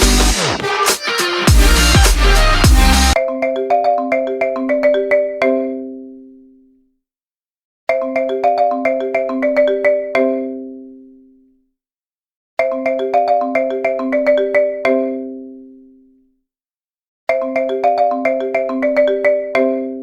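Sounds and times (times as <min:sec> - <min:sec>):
marimba-like alarm melody: 0:01.4 - 0:06.3, 0:07.9 - 0:11.2, 0:12.6 - 0:15.8, 0:17.3 - 0:20.0.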